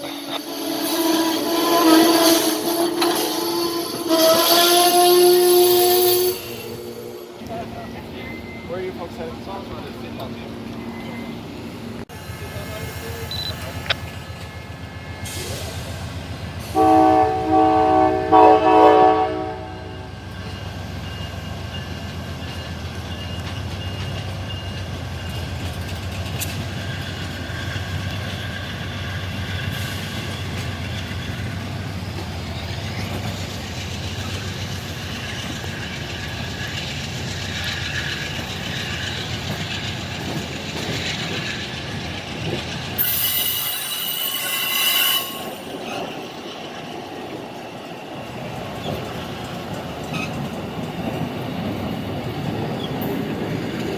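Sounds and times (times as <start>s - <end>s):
train rumbling: 0.0s - 53.9s
train horn blasts: 0.4s - 7.5s, 16.7s - 20.1s, 43.0s - 45.7s.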